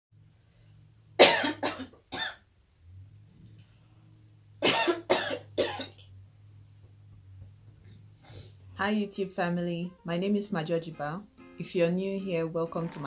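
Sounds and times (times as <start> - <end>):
person coughing: 1.2 - 2.4, 4.6 - 6.0.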